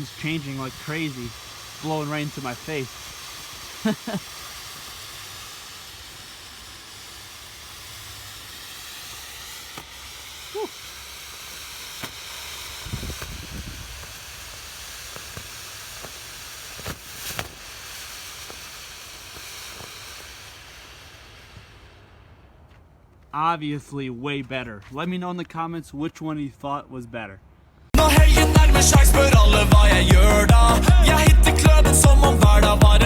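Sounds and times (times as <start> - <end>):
smoke bomb hissing: 0.0 - 22.5, 27.9 - 33.0
low rumble: 28.0 - 33.0.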